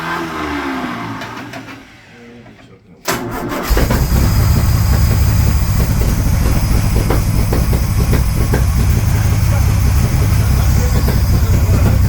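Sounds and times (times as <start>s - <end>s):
car engine idling: 3.6s - 12.0s.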